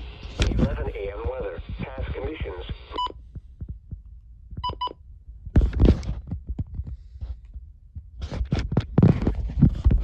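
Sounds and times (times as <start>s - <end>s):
handling rustling and thumps: 5.4s - 7.4s, 8.0s - 10.0s.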